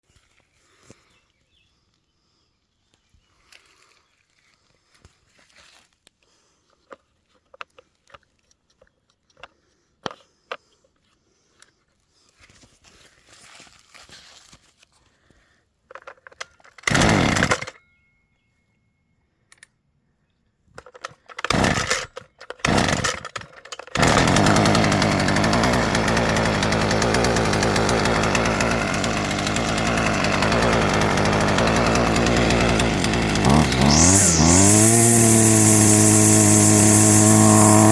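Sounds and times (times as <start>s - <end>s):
string trimmer engine running: 16.9s - 17.7s, 21.4s - 22.0s, 22.6s - 37.9s.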